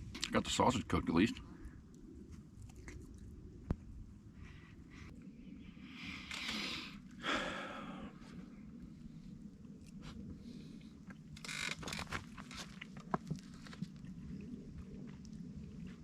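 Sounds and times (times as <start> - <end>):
person chewing: 2.4 - 3.4.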